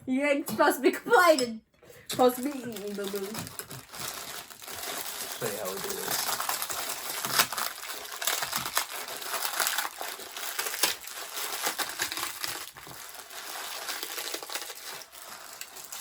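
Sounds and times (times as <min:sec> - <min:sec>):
noodles crushed in plastic packet: 0:02.1 - 0:16.0.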